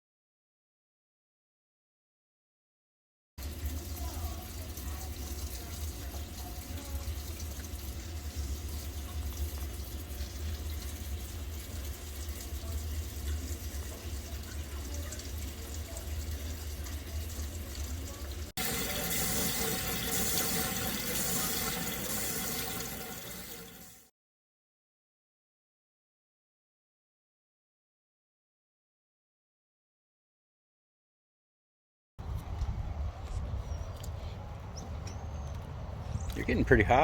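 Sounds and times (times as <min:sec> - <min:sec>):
water running from tap into sink: 0:03.4 - 0:24.1.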